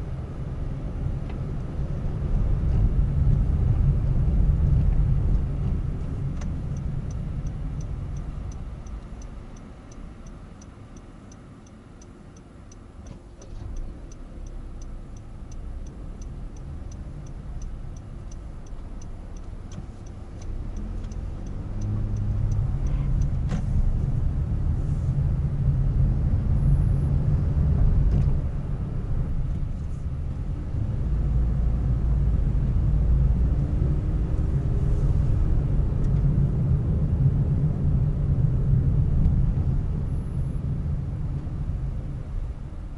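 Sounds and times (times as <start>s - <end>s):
car engine and road rumble: 0.0s - 42.9s
regular light ticking: 6.4s - 12.8s, 13.7s - 23.4s.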